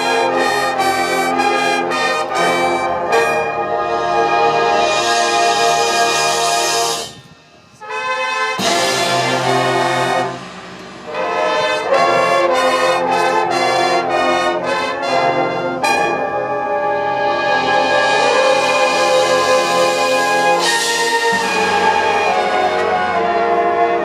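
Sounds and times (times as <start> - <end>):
brass band playing chords: 0.0 - 24.0.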